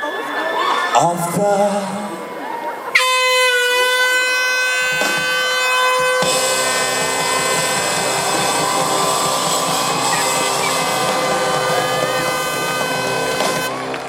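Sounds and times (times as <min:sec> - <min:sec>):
air horns sounding long notes: 0:03.0 - 0:14.0.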